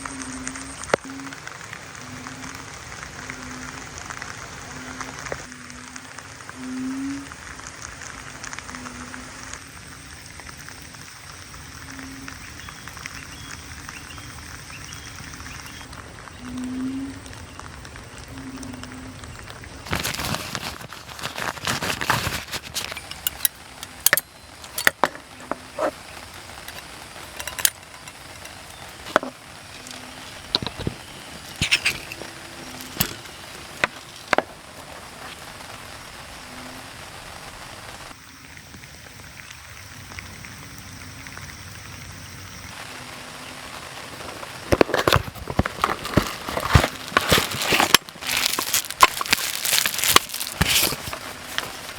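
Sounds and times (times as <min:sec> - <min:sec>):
steady hiss: 0:19.1 - 0:51.9
objects clicking and clattering: 0:19.9 - 0:34.6, 0:44.2 - 0:51.9.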